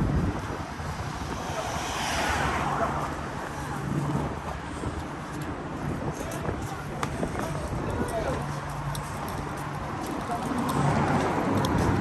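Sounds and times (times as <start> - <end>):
road vehicles passing: 0.0 - 12.0.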